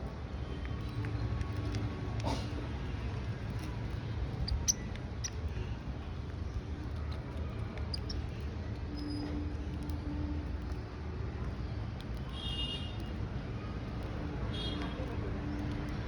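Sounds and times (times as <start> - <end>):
small birds chirping: 2.9 - 9.2.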